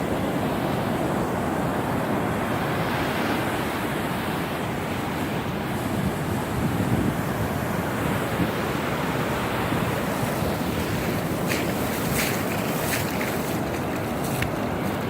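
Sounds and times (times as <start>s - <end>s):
ocean surf breaking: 0.0s - 15.0s
wind noise on microphone: 5.4s - 8.7s, 9.4s - 15.0s.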